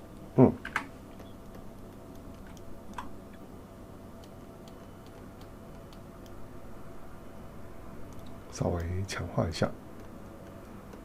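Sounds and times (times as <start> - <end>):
low steady hum: 0.0 - 11.0
keyboard and mouse clicks: 0.6 - 3.4, 4.2 - 6.4, 8.0 - 9.0, 10.0 - 11.0.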